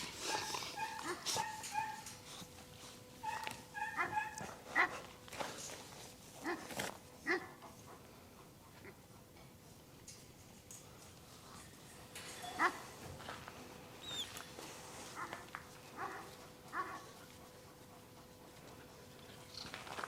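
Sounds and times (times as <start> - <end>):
puppy yelps: 3.2 - 4.9
puppies whining and yipping: 14.0 - 14.4.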